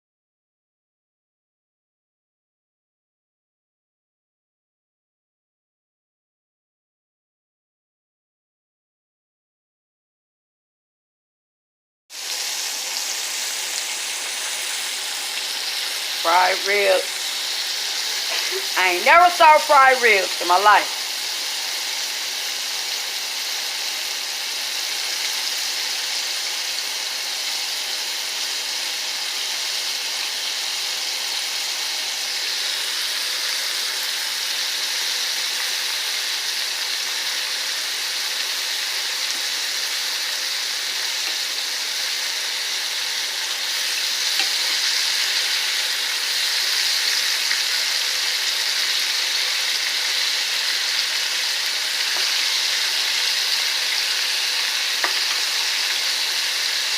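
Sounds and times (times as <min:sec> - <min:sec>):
meat sizzling in hot oil: 0:12.1 - 0:56.9.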